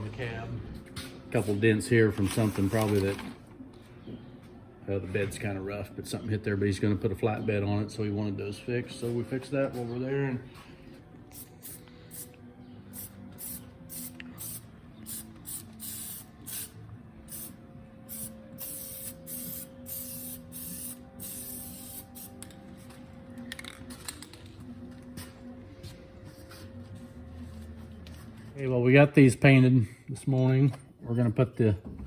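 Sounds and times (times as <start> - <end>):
paint spray hissing bursts: 11.4 - 12.3, 12.9 - 22.4.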